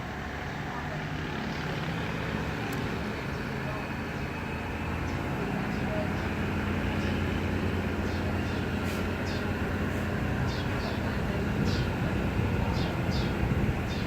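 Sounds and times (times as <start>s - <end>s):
train engine hum: 0.0s - 14.0s
train rumbling: 0.0s - 14.0s.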